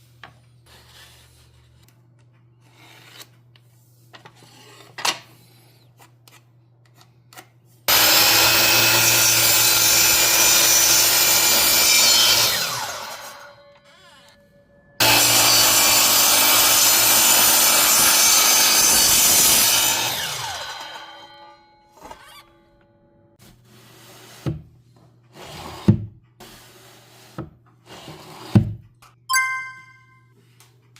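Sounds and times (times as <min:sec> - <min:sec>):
power tool cutting wood: 0:07.9 - 0:14.4, 0:15.0 - 0:22.4.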